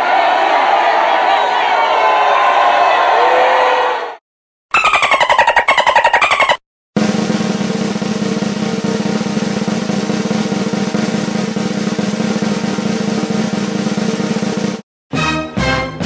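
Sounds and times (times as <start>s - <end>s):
snare drum roll: 7.0s - 14.8s.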